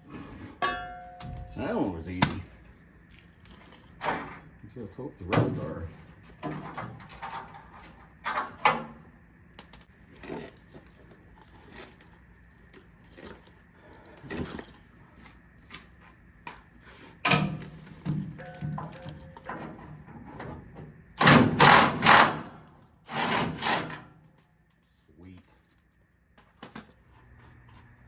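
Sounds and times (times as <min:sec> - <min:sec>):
hand tools clinking on metal: 0:18.4 - 0:19.5.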